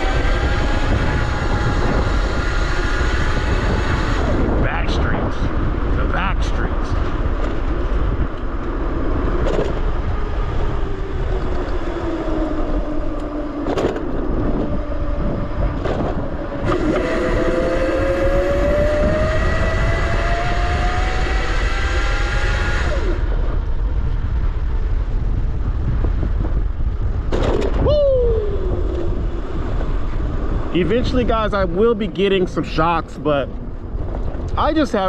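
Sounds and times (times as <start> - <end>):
electric motor whining: 0.0 - 4.6, 9.7 - 23.3
wind rumble on microphone: 0.0 - 35.0.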